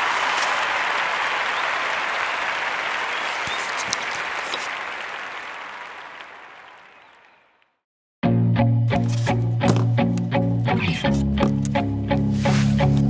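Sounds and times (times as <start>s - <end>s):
crowd clapping: 0.0s - 7.7s.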